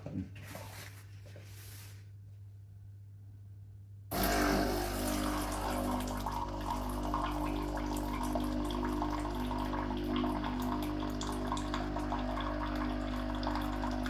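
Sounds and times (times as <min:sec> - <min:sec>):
coffee machine humming: 0:04.1 - 0:14.0
water pouring into a cup: 0:04.1 - 0:14.0.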